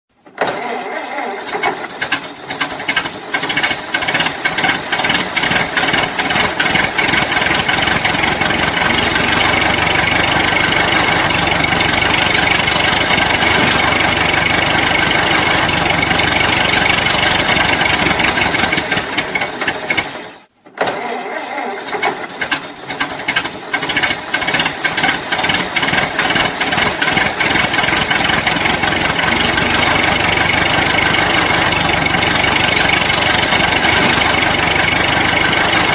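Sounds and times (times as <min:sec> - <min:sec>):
car engine starter cranking: 0:00.2 - 0:35.9
car engine sputtering and running: 0:00.4 - 0:20.5, 0:21.8 - 0:35.9.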